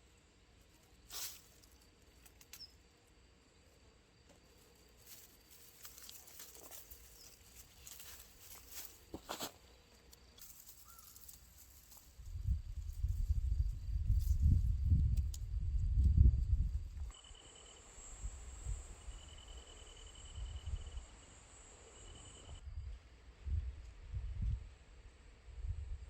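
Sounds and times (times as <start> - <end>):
faint rustles: 4.4 - 14.7.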